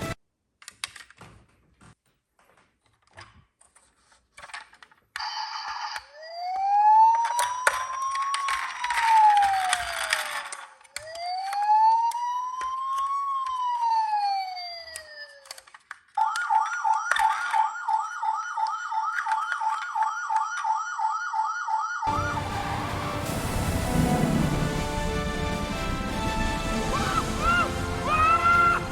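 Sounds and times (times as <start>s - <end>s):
emergency siren wail and yelp: 6.2s - 15.6s, 16.2s - 28.9s
music: 22.1s - 28.9s.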